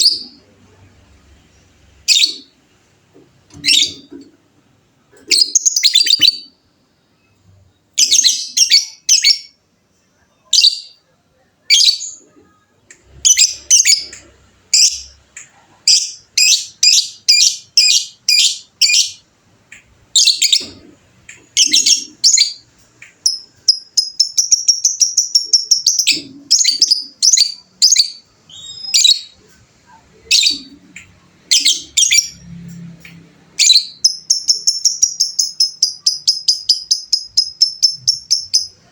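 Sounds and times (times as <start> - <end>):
lovebird chirping and trilling: 0.0 - 0.4, 2.0 - 2.6, 3.5 - 4.2, 5.2 - 6.6, 7.9 - 9.6, 10.5 - 11.0, 11.7 - 15.2, 15.8 - 19.2, 20.1 - 30.8, 31.4 - 32.6, 33.6 - 38.9.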